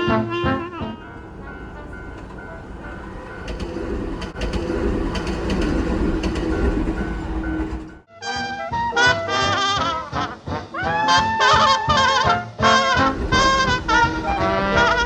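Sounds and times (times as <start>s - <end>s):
train wheels rumbling and clacking: 0.5s - 8.1s, 12.9s - 15.0s
level-crossing bell ringing: 0.6s - 8.0s.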